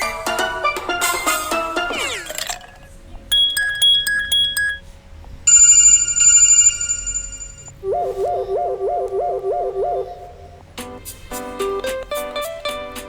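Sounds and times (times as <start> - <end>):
bell-like phone ring: 3.3 - 4.8, 5.5 - 7.8
electronic beeping ringtone: 3.3 - 4.8, 5.5 - 8.5
low warbling tone: 7.8 - 10.7.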